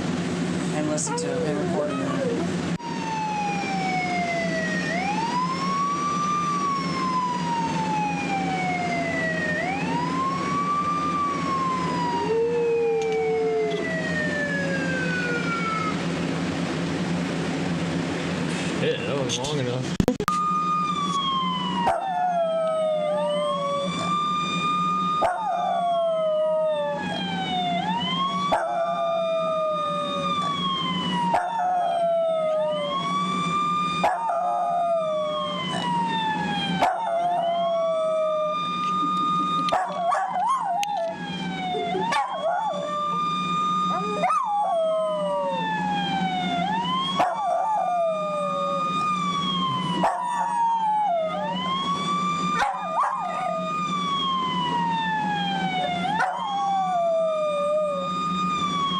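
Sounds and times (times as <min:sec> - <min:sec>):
police siren wailing: 0:00.7 - 0:17.8, 0:20.3 - 0:58.9
dog howling: 0:11.1 - 0:16.1, 0:21.7 - 0:33.3, 0:34.0 - 0:51.8, 0:52.4 - 0:53.8, 0:54.9 - 0:58.2.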